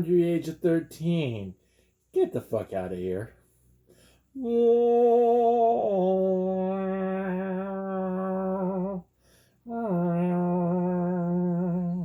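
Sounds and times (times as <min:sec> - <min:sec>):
person humming long notes: 0:04.4 - 0:12.0.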